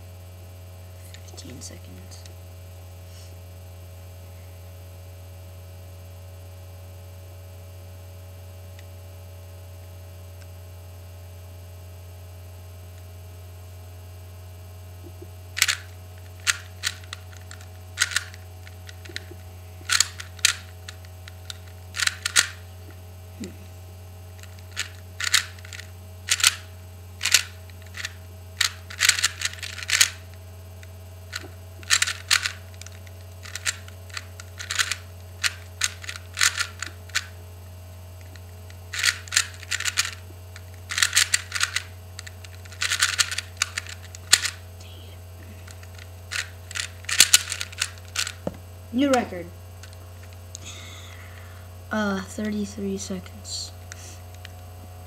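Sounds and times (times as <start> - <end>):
steady electrical hum: 0.0 - 55.0
puzzle cube clicking: 15.1 - 22.7, 24.4 - 30.3, 31.3 - 37.4, 38.2 - 45.0, 45.6 - 50.0.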